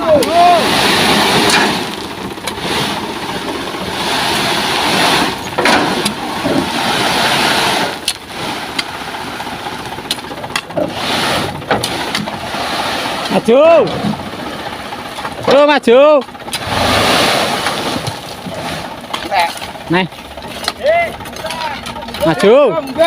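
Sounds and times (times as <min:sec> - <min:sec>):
heavy diesel machinery running: 0:00.0 - 0:23.0
metal clanks and knocks: 0:05.4 - 0:06.7, 0:18.0 - 0:23.0.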